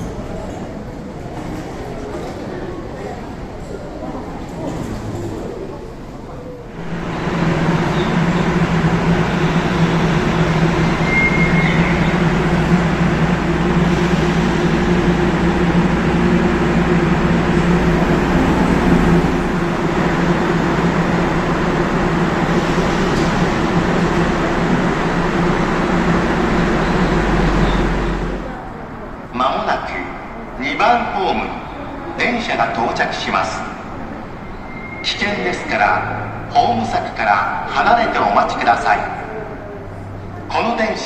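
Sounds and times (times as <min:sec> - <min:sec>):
monorail train humming and rumbling: 0:00.0 - 0:41.0.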